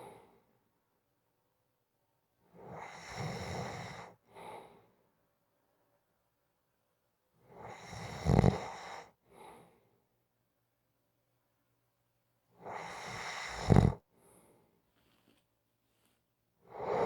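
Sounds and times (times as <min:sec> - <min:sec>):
soft breath: 0:04.2 - 0:05.1, 0:12.9 - 0:17.0
person snoring: 0:12.7 - 0:14.0.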